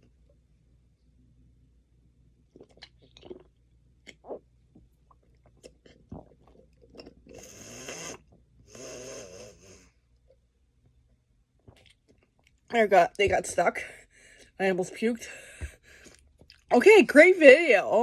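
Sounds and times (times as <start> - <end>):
person gulping water: 2.5 - 8.4, 11.6 - 12.6
noisy throat sounds: 7.3 - 10.0.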